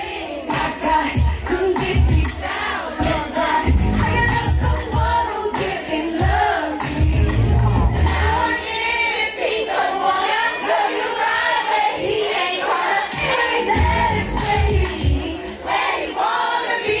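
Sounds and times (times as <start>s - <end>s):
crowd voices: 0.0s - 17.0s
live band playing: 6.8s - 8.5s.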